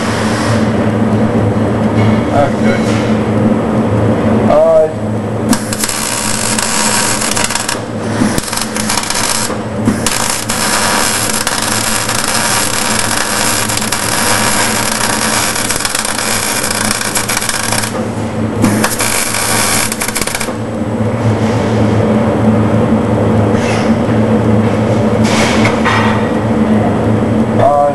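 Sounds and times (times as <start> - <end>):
low electrical hum: 0.0 - 27.9
welding arc crackling hiss: 5.5 - 18.0, 18.6 - 20.6.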